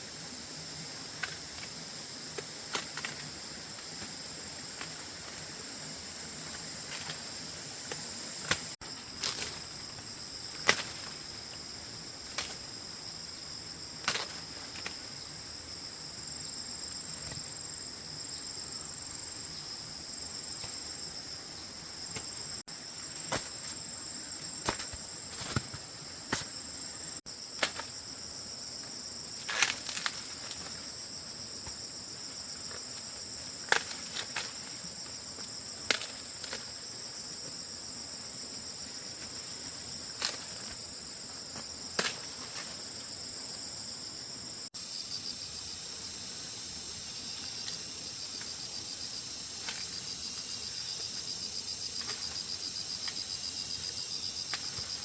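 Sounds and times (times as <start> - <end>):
insects chorus: 0.0 - 55.0
sharp snaps and knocks: 7.9 - 9.6, 10.6 - 11.2, 14.0 - 15.0, 27.6 - 28.0, 33.6 - 34.6, 35.4 - 36.7.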